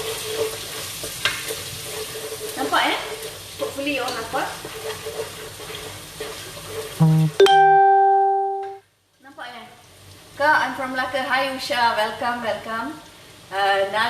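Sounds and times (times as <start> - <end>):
stirring: 0.0 - 7.0
anchovies and garlic sizzling in oil: 0.0 - 7.2, 9.0 - 14.0
sustained musical note: 7.0 - 8.8.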